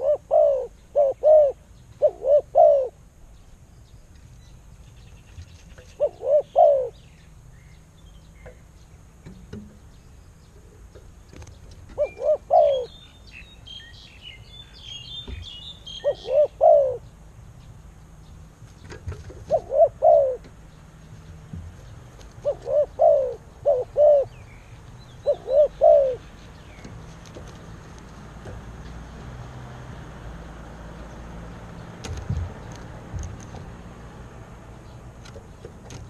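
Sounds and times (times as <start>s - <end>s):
dove cooing: 0.0s - 3.0s, 5.8s - 7.0s, 11.9s - 13.0s, 15.9s - 17.1s, 19.2s - 20.6s, 22.4s - 24.4s, 25.2s - 26.4s
small birds chirping: 0.0s - 36.0s.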